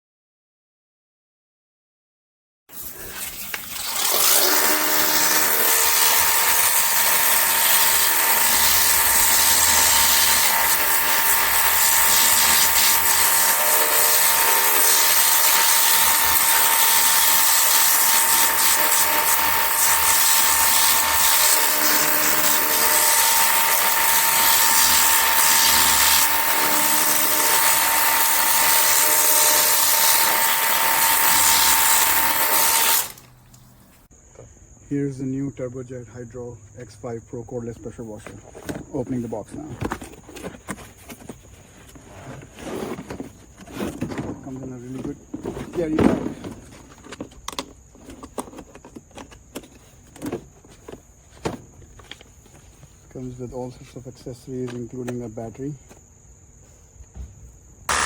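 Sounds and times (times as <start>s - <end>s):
pressure washer whining: 2.9s - 33.6s.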